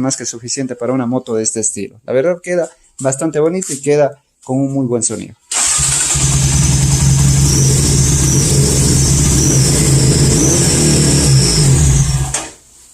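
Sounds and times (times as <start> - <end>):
motorcycle engine running: 5.6 - 12.4
high wavering exhaust whistle: 6.6 - 12.3.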